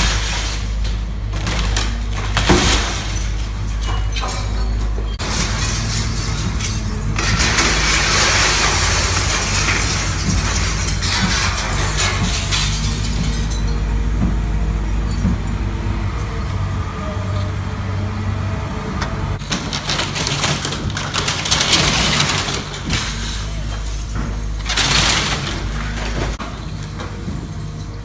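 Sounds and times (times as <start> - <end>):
large vehicle engine droning: 0.0 - 28.0.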